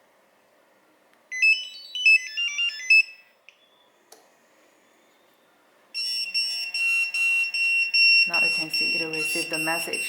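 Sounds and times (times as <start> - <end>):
high pulsing pager alarm: 6.0 - 10.0.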